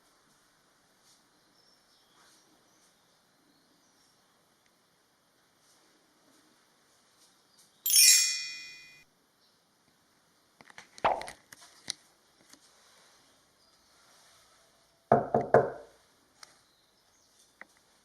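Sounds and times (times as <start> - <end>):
bright metallic ding: 7.9 - 9.0.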